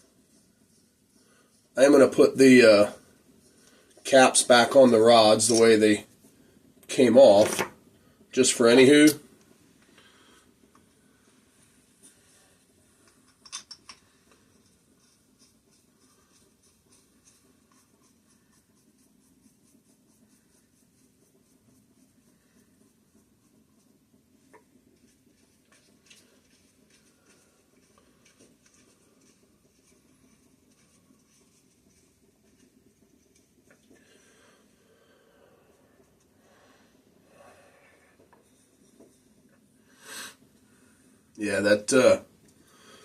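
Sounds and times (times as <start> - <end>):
metal parts clicking: 13.3 - 14.0.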